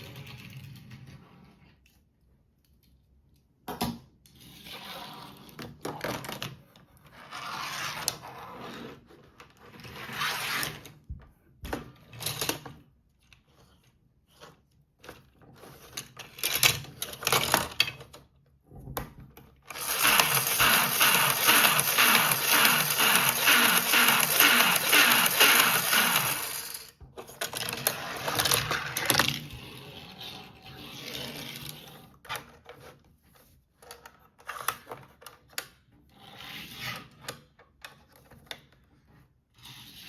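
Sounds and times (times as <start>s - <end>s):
plastic toy clicking and rattling: 14.4s - 18.2s, 19.7s - 29.4s.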